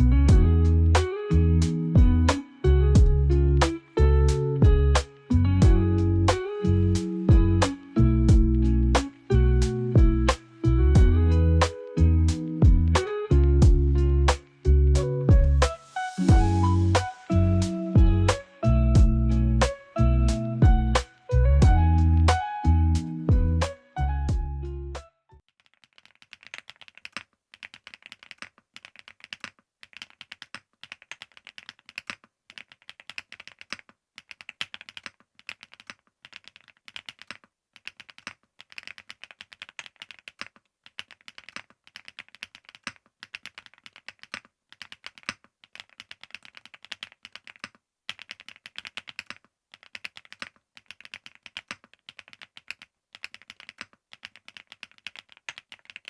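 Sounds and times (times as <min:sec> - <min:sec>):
mechanical keyboard typing: 0:25.6 - 0:56.0.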